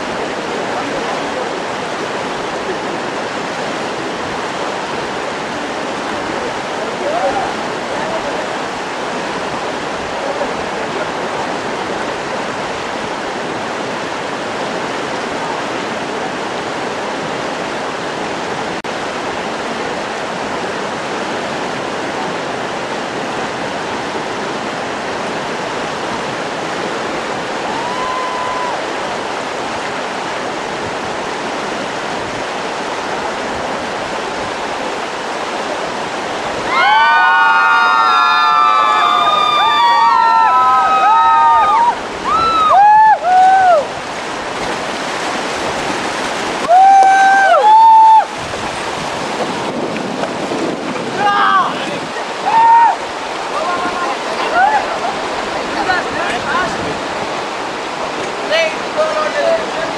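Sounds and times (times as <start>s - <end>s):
river rapids rushing: 0.0s - 59.9s
people shouting and cheering: 36.6s - 43.9s, 46.6s - 48.3s, 51.2s - 55.1s.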